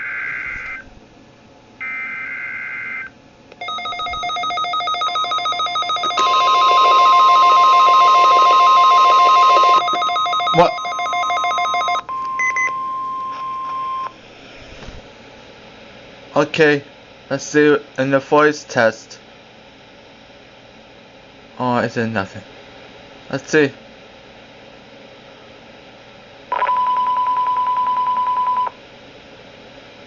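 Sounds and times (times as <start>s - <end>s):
warbling data tones: 1.8s - 12.0s
loud steady high tone: 1.8s - 14.2s
rapid pulsing beeps: 3.6s - 13.2s.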